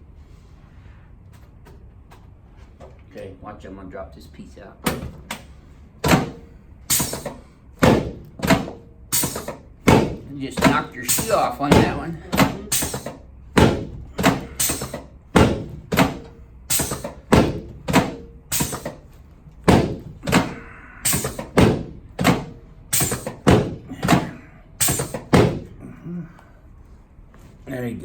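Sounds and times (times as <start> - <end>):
drop table clunking thumps: 6.0 - 19.0, 19.6 - 25.7.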